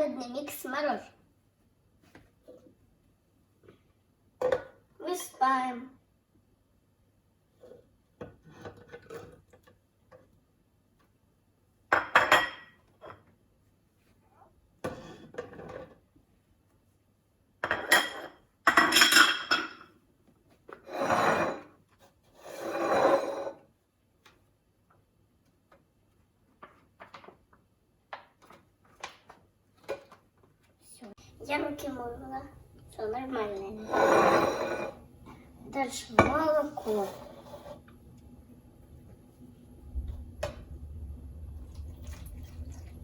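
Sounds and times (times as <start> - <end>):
dishes and utensils handled: 7.6 - 9.7, 17.6 - 20.0, 33.8 - 35.0.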